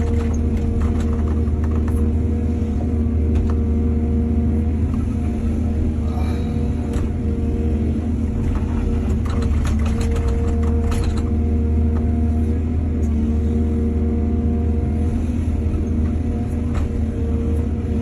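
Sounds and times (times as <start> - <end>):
clatters and knocks: 0.0 - 2.2, 8.4 - 11.4
heavy diesel engine running: 0.0 - 18.0.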